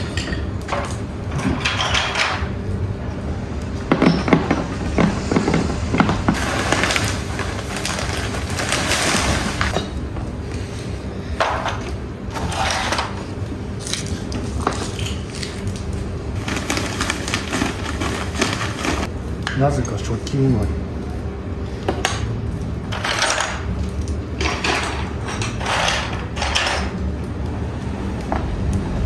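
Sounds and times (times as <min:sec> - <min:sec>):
pottery shards and stones clattering: 0:00.0 - 0:02.6, 0:03.8 - 0:10.0, 0:11.3 - 0:15.8, 0:21.9 - 0:27.0.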